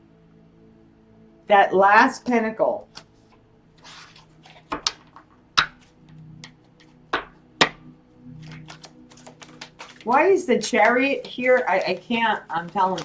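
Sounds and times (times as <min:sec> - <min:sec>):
faint background music: 0:00.0 - 0:13.0
cards tapping on a table: 0:03.8 - 0:13.0.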